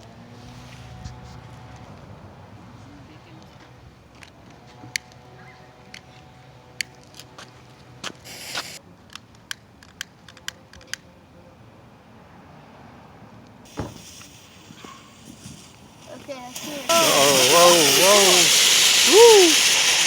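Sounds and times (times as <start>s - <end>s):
firework hiss: 8.2s - 8.8s, 13.7s - 20.0s
fireworks cracking and popping: 8.3s - 10.0s, 13.7s - 20.0s.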